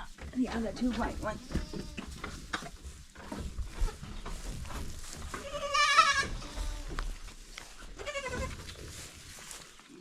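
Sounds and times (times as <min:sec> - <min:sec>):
goat kid bleating: 0:01.4 - 0:02.2, 0:05.3 - 0:07.2, 0:08.0 - 0:08.6.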